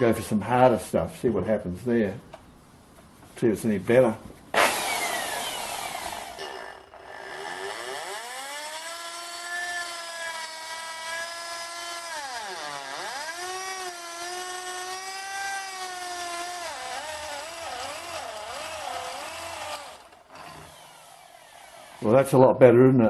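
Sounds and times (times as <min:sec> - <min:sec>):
electric drill cutting metal: 0:04.6 - 0:22.1.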